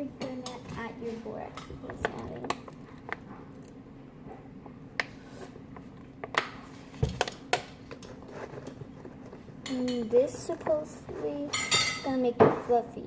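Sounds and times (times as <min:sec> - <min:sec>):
kitchenware clicking and clinking: 0:06.3 - 0:12.9.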